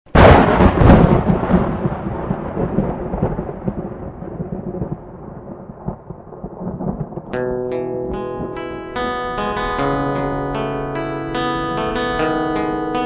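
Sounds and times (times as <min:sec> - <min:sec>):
rolling rumble of thunder: 0:00.1 - 0:07.4
thunderclap: 0:00.1 - 0:07.4.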